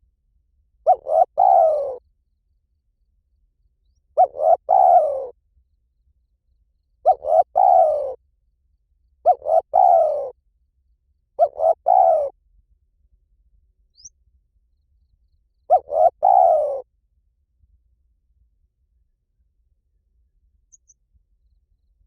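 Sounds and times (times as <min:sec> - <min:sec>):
dove cooing: 0:00.9 - 0:02.0, 0:04.2 - 0:05.4, 0:07.0 - 0:08.2, 0:09.2 - 0:10.4, 0:11.4 - 0:12.4, 0:15.7 - 0:16.9.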